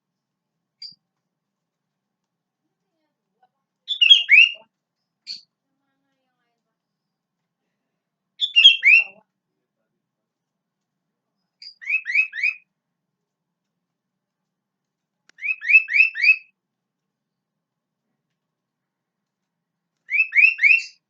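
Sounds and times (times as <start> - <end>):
bird singing whistled notes: 3.9 - 4.6, 8.4 - 9.2, 11.6 - 12.6, 15.4 - 16.5, 20.1 - 21.0.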